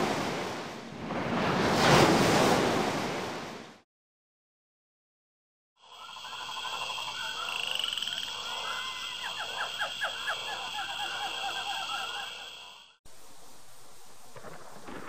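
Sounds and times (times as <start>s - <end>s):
frogs calling: 5.8s - 13.0s.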